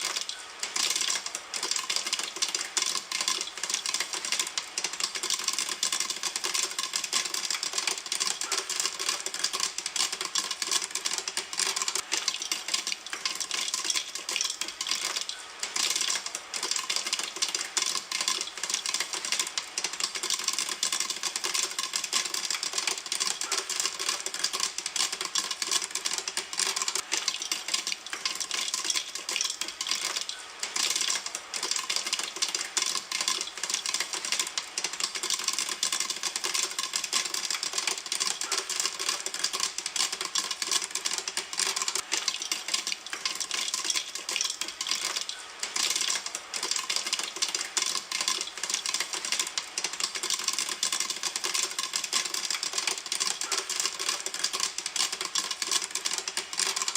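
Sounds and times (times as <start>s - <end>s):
popcorn popping in a pan: 0.0s - 56.9s.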